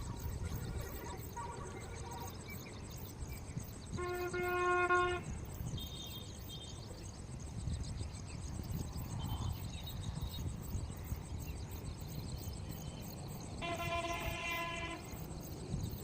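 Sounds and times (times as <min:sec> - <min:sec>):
vehicle horn blast: 0:03.9 - 0:06.2, 0:13.6 - 0:15.2.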